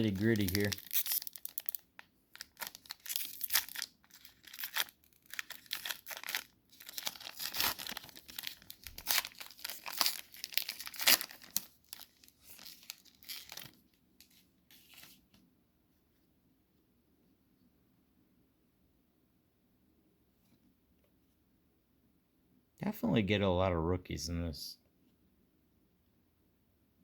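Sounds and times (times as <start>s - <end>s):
wrapper tearing and crinkling: 0.0s - 15.2s.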